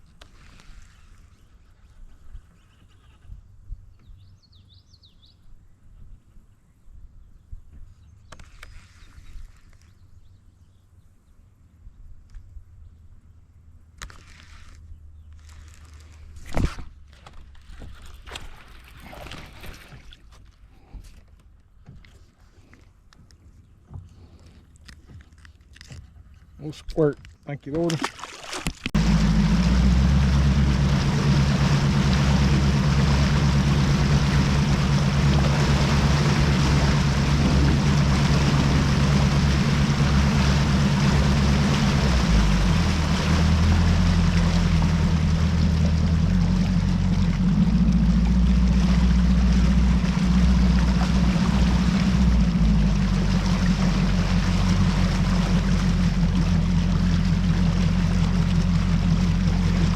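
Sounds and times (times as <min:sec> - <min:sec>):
wind: 0:00.0 - 0:59.9
rushing water: 0:27.9 - 0:59.9
outboard motor drone: 0:29.0 - 0:59.9.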